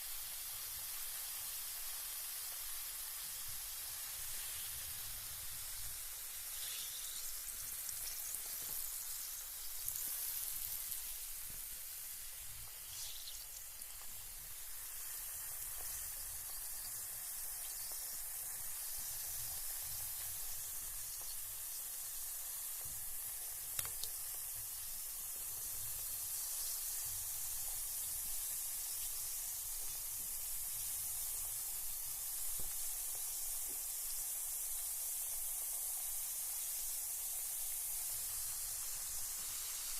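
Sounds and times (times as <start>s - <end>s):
bath bomb fizzing in water: 1.6s - 39.9s.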